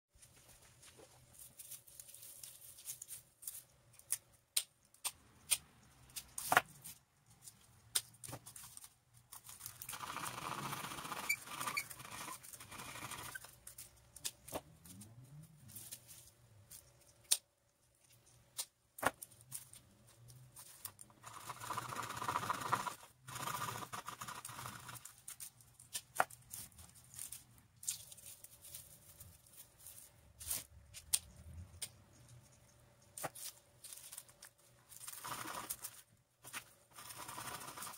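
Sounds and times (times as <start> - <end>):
sharp clicks and snips: 3.9 - 7.0, 17.0 - 17.5
scraping or rustling: 8.3 - 17.2, 19.2 - 37.9.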